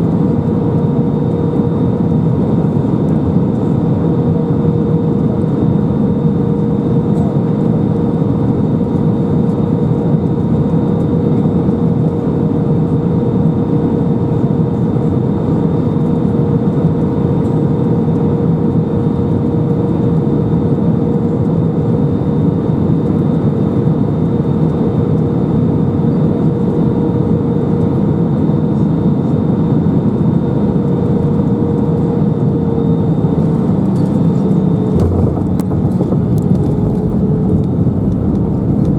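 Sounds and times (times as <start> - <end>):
jet engines droning: 0.0 - 38.9
steady cabin hum: 33.5 - 38.9
rushing airflow: 34.8 - 38.9.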